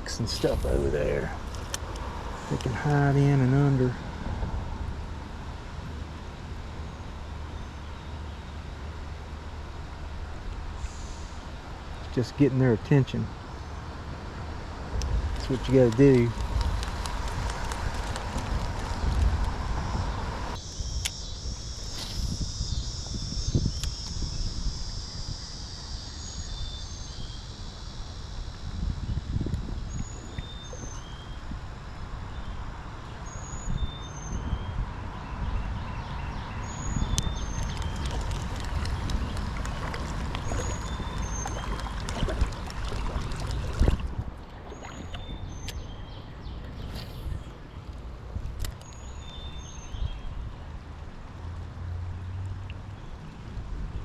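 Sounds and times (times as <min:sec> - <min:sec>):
steady hiss: 0:00.0 - 0:04.2, 0:09.8 - 0:13.3, 0:14.2 - 0:33.3
wind rumbling on microphone: 0:00.0 - 0:07.9, 0:09.3 - 0:54.0
steady rain: 0:15.2 - 0:20.6.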